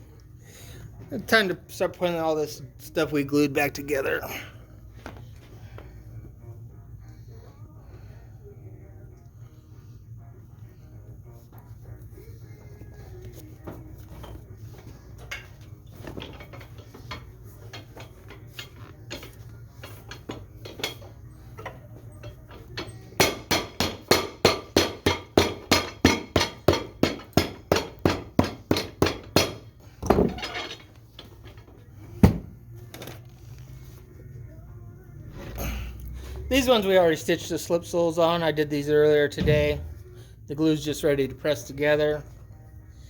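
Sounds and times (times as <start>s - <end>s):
hammer striking a boot: 23.2s - 30.5s.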